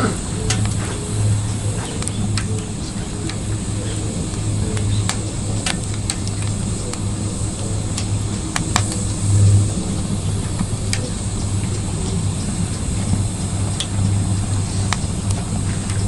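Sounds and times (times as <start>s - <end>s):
low rumble of stove fire: 0.0s - 16.0s
wood fire crackling and popping: 0.4s - 16.0s.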